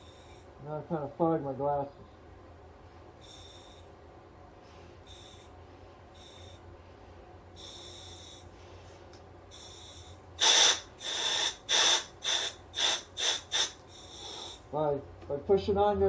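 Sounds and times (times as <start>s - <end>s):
breathing through a regulator: 0.0s - 0.6s, 3.2s - 4.0s, 4.6s - 14.7s
purge button air bursts: 9.6s - 14.6s.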